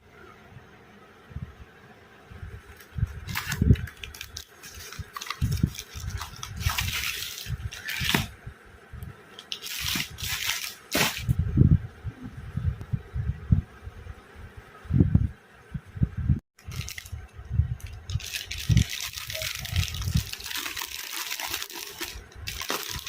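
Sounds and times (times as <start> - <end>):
packaging rustling and crinkling: 2.7 - 8.3, 9.4 - 11.3, 16.6 - 17.2, 17.8 - 23.0.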